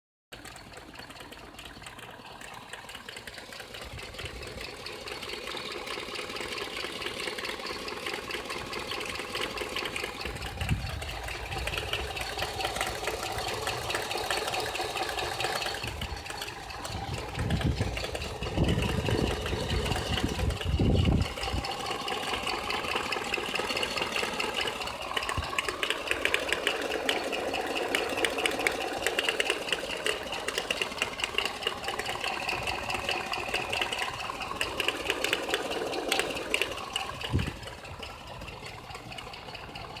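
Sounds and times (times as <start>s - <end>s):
engine knocking tick: 0.3s - 40.0s
heavy low rumbling: 15.3s - 23.2s.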